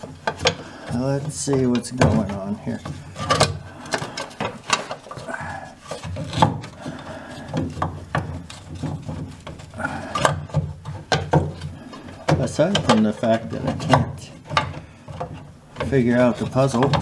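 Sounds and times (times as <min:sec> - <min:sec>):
metal valve cover knocking and scraping: 0:00.0 - 0:17.0.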